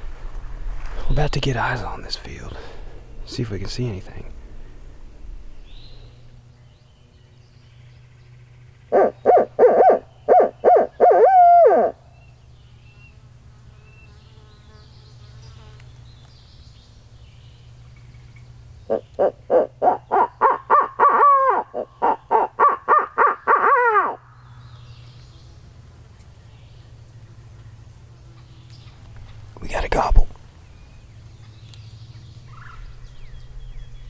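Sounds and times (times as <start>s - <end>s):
owl call hoots: 8.9s - 12.0s, 18.9s - 24.3s.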